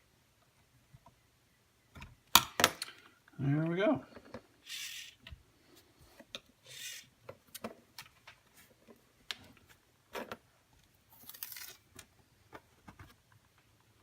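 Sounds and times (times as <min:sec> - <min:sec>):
small parts and tools clicking: 0:04.1 - 0:05.4.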